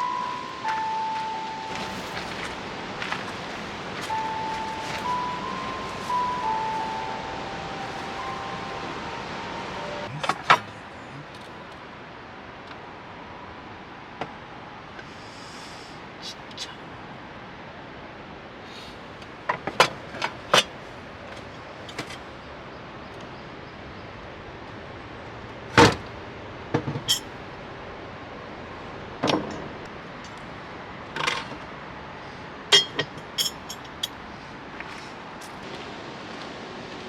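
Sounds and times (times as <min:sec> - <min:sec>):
steady hiss: 0:00.0 - 0:10.1, 0:14.9 - 0:16.9.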